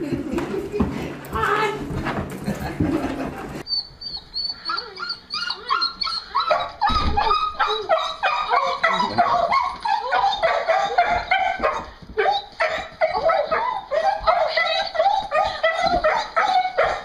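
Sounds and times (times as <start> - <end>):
dog whining and yelping: 3.6 - 17.0.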